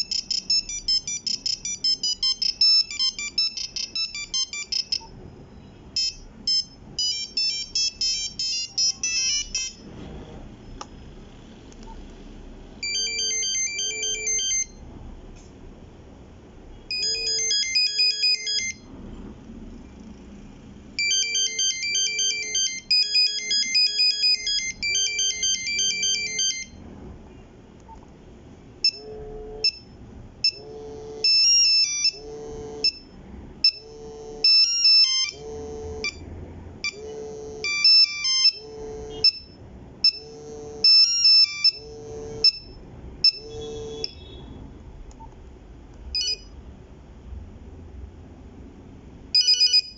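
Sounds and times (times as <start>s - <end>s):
phone ringtone beeping melody: 0.0s - 9.9s, 12.8s - 14.8s, 16.9s - 18.9s, 21.0s - 26.8s, 28.8s - 44.4s, 46.2s - 46.6s, 49.3s - 49.9s.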